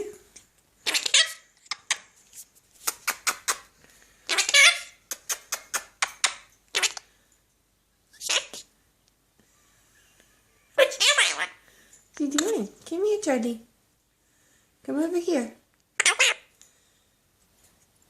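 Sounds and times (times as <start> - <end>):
parrot making raspy noises: 0.8 - 2.1, 4.3 - 7.1, 8.2 - 8.7, 10.8 - 11.6, 16.0 - 16.5.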